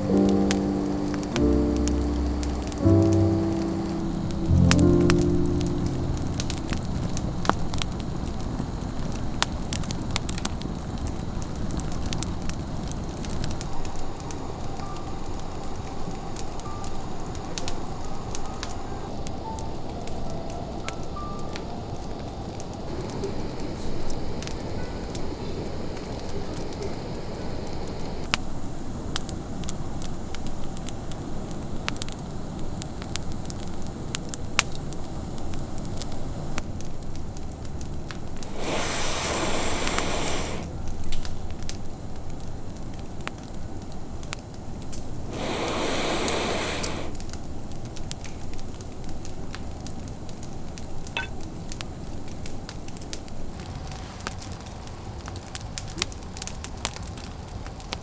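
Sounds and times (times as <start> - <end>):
hissing rush: 0.0 - 8.9, 22.8 - 28.3, 38.4 - 40.7, 45.1 - 47.4
campfire crackling and popping: 0.0 - 58.0.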